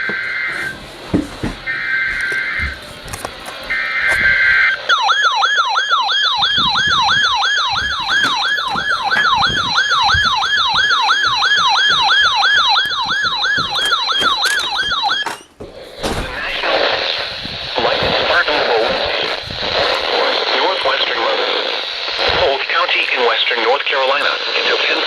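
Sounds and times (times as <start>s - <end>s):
electronic siren alert tone: 1.7s - 2.8s, 3.7s - 15.5s.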